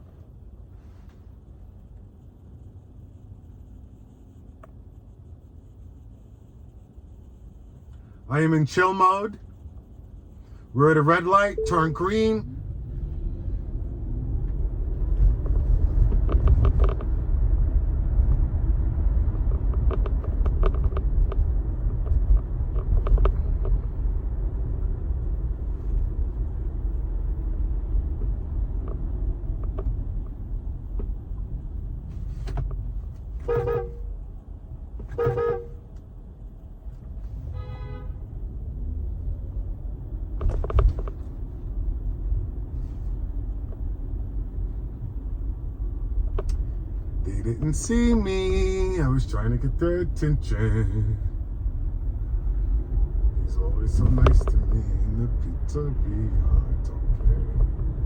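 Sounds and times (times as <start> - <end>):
low road rumble: 0.0 - 58.0
car horn toots: 11.2 - 12.4, 33.4 - 34.1, 35.1 - 35.9, 37.5 - 38.2.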